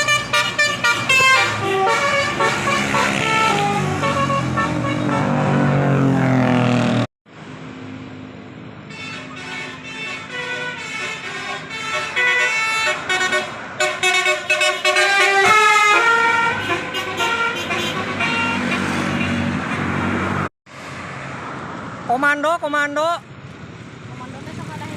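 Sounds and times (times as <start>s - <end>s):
musical air horn playing tune: 0.0s - 5.7s, 8.9s - 19.5s.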